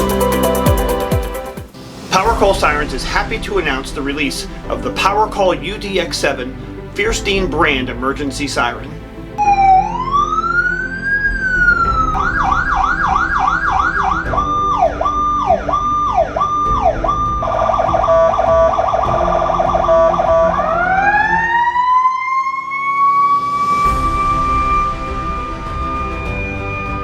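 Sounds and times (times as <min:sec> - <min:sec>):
electronic emergency siren: 0:09.4 - 0:27.0.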